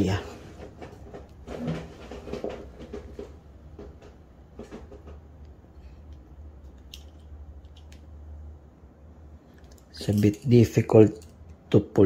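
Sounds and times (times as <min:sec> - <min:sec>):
steady low hum: 0:00.0 - 0:12.0
pistol parts clicking and scraping: 0:05.8 - 0:08.1, 0:09.5 - 0:11.6.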